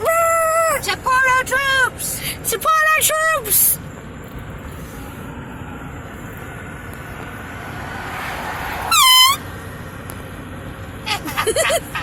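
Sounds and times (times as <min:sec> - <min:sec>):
car road noise: 0:00.0 - 0:12.0
air horn blast: 0:08.2 - 0:09.6.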